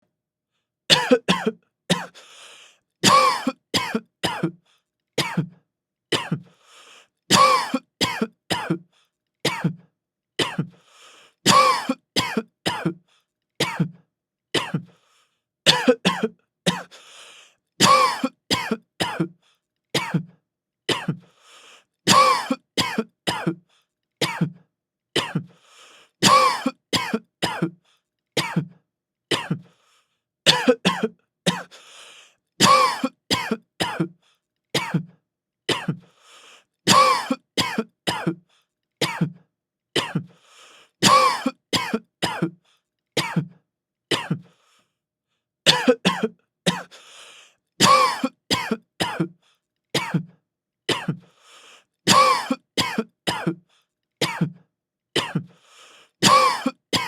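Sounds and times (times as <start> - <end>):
man coughing: 0.9 - 2.2, 3.0 - 4.6, 5.2 - 6.4, 7.3 - 8.8, 9.5 - 9.8, 10.4 - 10.7, 11.5 - 13.0, 13.6 - 13.9, 14.6 - 14.9, 15.7 - 16.9, 17.8 - 19.3, 20.0 - 20.3, 22.1 - 23.6, 25.2 - 25.5, 26.2 - 27.8, 28.4 - 28.7, 29.3 - 29.7, 30.5 - 31.7, 32.6 - 34.1, 34.8 - 35.1, 36.9 - 38.4, 40.0 - 40.3, 41.0 - 42.6, 43.2 - 43.5, 44.1 - 44.4, 45.7 - 46.9, 47.8 - 49.3, 50.0 - 50.3, 52.1 - 53.6, 54.2 - 54.6, 55.2 - 55.5, 56.2 - 57.0
drawn-in breath: 2.1 - 2.8, 6.4 - 7.2, 10.7 - 11.4, 16.9 - 17.6, 21.2 - 21.9, 25.5 - 26.2, 31.7 - 32.4, 36.0 - 36.7, 40.3 - 41.0, 46.9 - 47.6, 51.2 - 51.9, 55.5 - 56.2.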